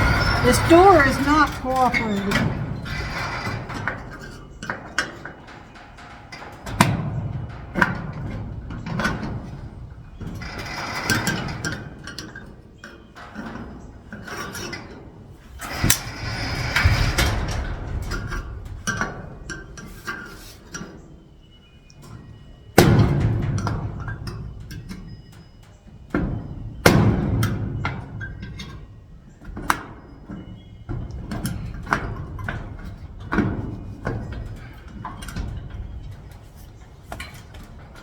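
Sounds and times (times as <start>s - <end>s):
metal lock clicking and rattling: 15.6s - 19.1s.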